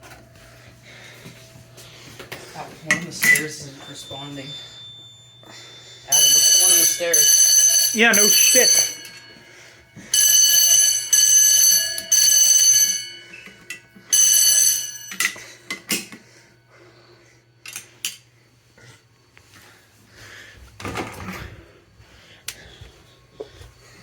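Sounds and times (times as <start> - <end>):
fire alarm bell ringing: 0.0 - 18.2.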